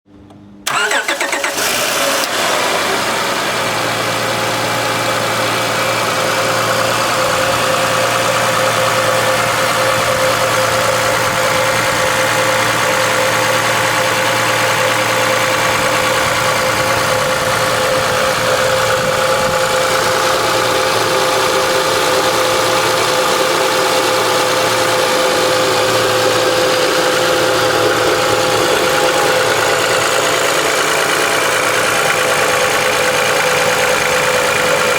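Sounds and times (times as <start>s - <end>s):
engine whine: 0.1s - 34.9s
car engine starting and idling: 0.3s - 34.9s.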